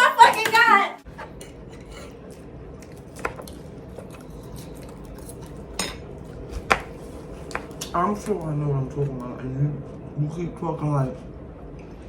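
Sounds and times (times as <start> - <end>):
low background hum: 0.0 - 12.0
cutlery and dishes clinking: 1.2 - 2.3, 5.2 - 6.1.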